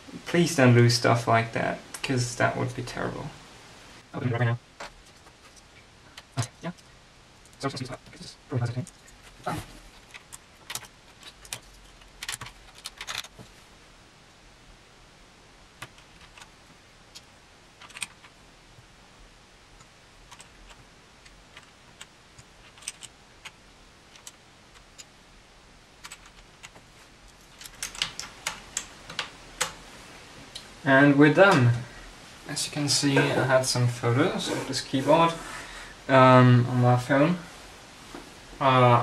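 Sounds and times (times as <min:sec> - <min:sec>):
keycaps clicking onto keyboard: 0:27.6 - 0:29.8.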